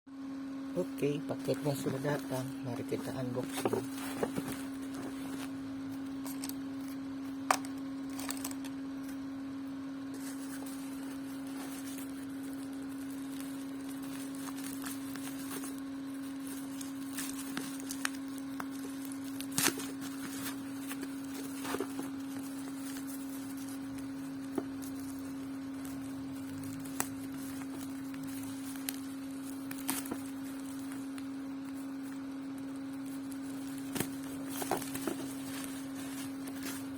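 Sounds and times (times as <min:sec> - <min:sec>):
steady low hum: 0:00.1 - 0:36.9
packaging clicks and rustles: 0:10.2 - 0:36.9.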